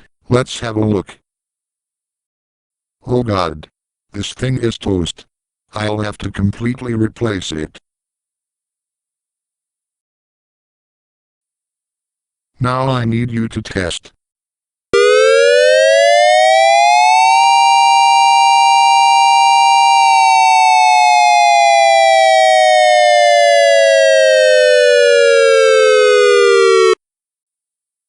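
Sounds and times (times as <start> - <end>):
dual-tone warning siren: 15.0 - 27.0.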